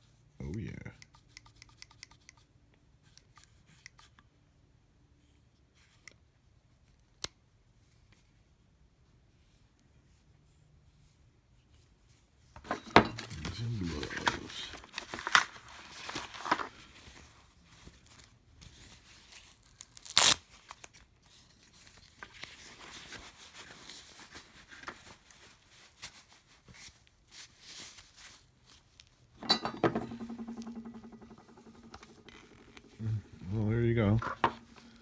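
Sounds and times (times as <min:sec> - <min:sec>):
packaging rustling and crinkling: 0:13.2 - 0:21.0.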